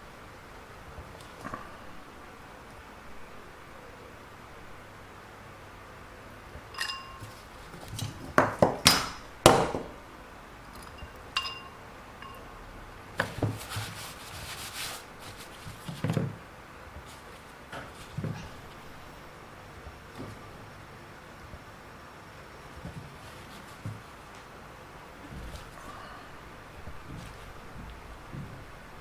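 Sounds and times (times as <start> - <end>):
light clinks: 6.7 - 7.4, 10.7 - 12.5
rustling: 13.1 - 20.6, 22.6 - 29.0.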